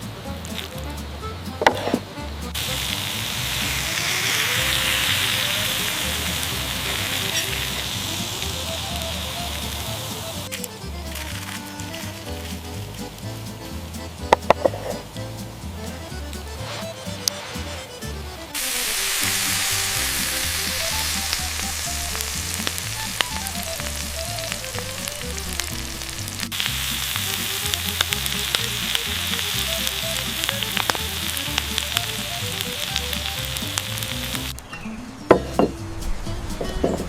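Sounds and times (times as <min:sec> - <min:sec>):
soft background music: 0:00.0 - 0:37.0
food sizzling on a grill: 0:02.5 - 0:13.7, 0:18.6 - 0:34.6.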